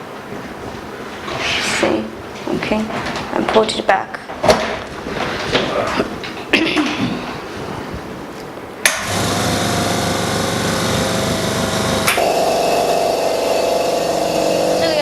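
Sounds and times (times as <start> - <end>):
electric pump motor humming: 8.8 - 15.0.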